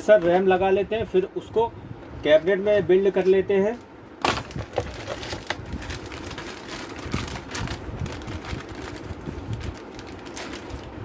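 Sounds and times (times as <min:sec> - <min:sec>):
packaging rustling: 0:04.2 - 0:11.0.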